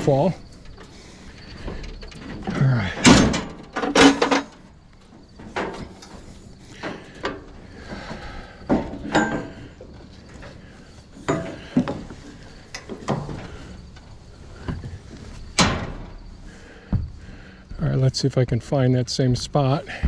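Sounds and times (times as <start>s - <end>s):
footsteps on plywood roof: 4.6s - 17.8s.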